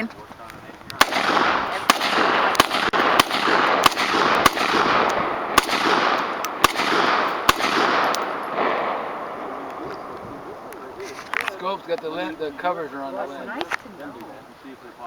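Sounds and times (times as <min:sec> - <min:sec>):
rifle shots: 0:01.0 - 0:11.6.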